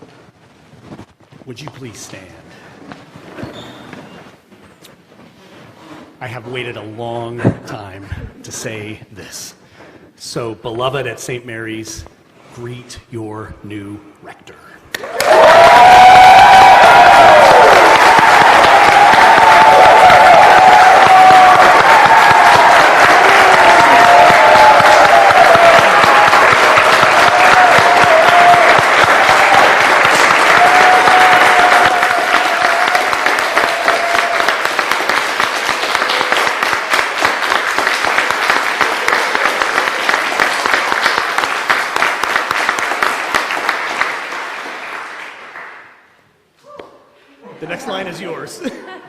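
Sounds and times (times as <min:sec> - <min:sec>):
congregation applauding: 0:14.9 - 0:46.2.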